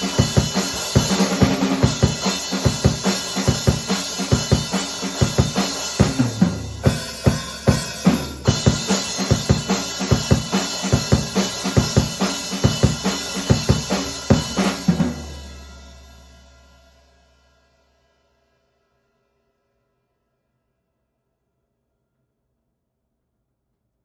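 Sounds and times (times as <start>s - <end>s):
acoustic drum kit groove: 0.0s - 16.5s.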